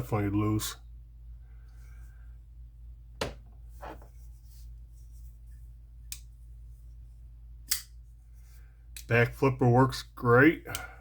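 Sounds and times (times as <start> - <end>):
folding knife blade clicking: 7.7 - 7.9.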